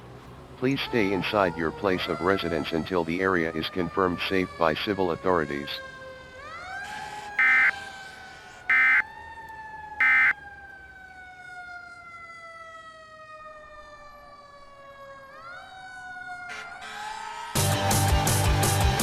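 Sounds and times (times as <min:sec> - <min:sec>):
screeching data tone bursts: 0:07.4 - 0:07.7, 0:08.7 - 0:09.0, 0:10.0 - 0:10.3
siren rising and falling: 0:07.4 - 0:07.7, 0:08.7 - 0:09.0, 0:09.9 - 0:10.4.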